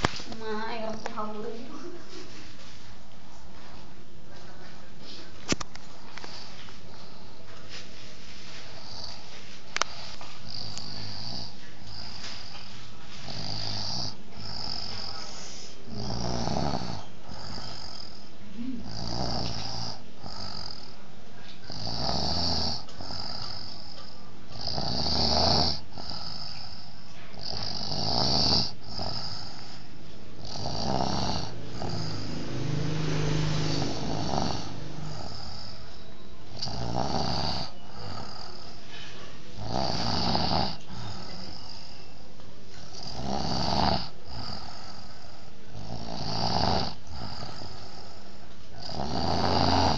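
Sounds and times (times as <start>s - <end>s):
person snoring: 8.8s - 12.5s, 13.2s - 21.0s, 21.7s - 24.0s, 24.6s - 29.8s, 30.4s - 35.9s, 36.5s - 38.8s, 39.6s - 42.0s, 42.8s - 49.9s.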